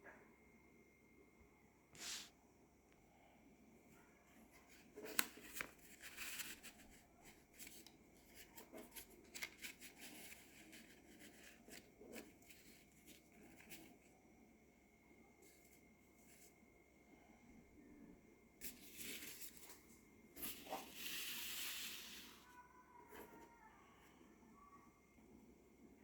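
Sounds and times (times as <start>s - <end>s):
paper rustling: 2.0s - 2.3s, 4.5s - 14.1s, 18.6s - 22.4s.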